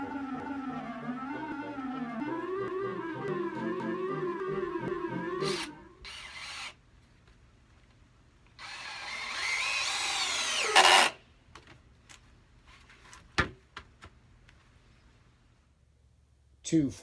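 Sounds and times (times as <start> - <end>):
power drill running: 5.4 - 6.8, 8.6 - 11.2.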